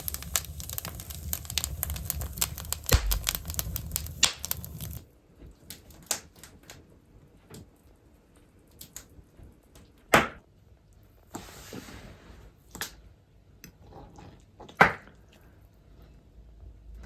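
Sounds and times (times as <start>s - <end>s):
sharp knocks: 2.9s - 3.4s
rustling scrape: 11.3s - 12.6s.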